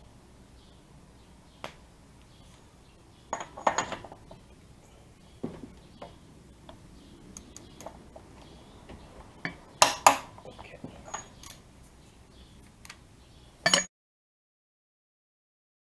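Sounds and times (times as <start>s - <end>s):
metal tools clinking: 3.3s - 6.2s, 7.3s - 11.7s, 13.6s - 13.9s.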